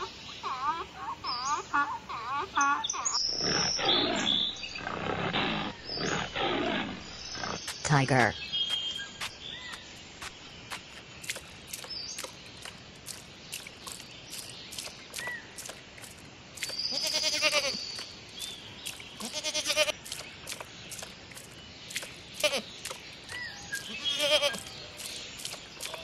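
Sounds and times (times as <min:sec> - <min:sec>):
small chirps: 0:07.2 - 0:26.0
cartoon goat bleating: 0:16.9 - 0:17.8, 0:19.2 - 0:19.9, 0:22.4 - 0:22.6, 0:23.9 - 0:24.6.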